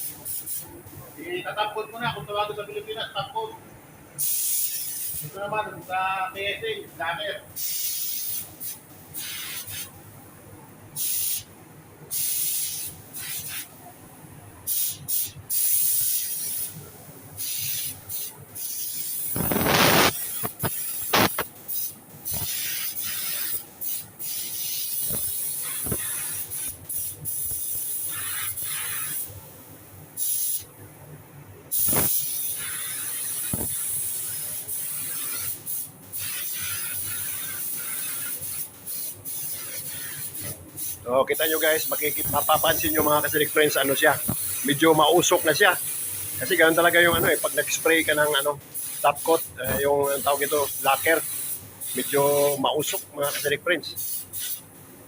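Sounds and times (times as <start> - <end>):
paint spray gun hissing: 0.0 - 0.6, 4.2 - 5.4, 7.6 - 9.9, 11.0 - 11.5, 12.1 - 13.7, 14.7 - 16.8, 17.4 - 29.3, 30.2 - 30.6, 31.7 - 54.6.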